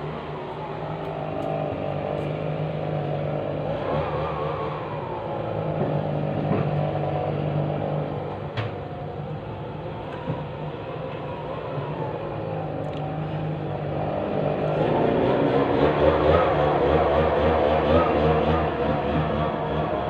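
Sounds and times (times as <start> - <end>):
engine revving: 0.0 - 8.4, 13.2 - 20.0.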